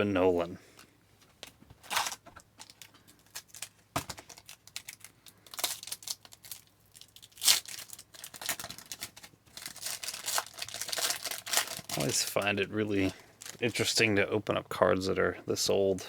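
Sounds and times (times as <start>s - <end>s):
wrapper crinkling and tearing: 1.8s - 14.0s.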